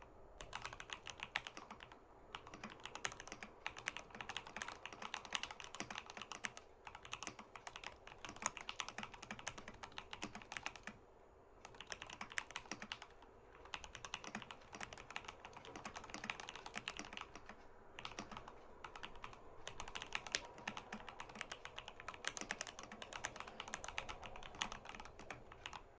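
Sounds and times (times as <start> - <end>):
typing on mechanical keyboard: 0.4 - 11.0, 11.6 - 26.0.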